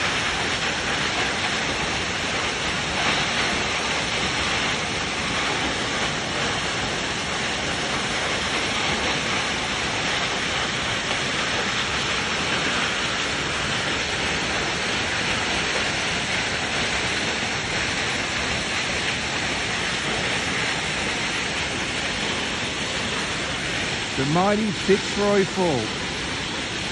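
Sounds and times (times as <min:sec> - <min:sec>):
waterfall roaring: 0:00.0 - 0:26.9.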